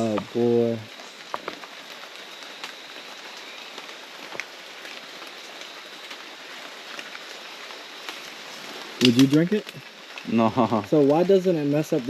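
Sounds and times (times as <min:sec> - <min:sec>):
faint clicks: 0:09.0 - 0:10.3.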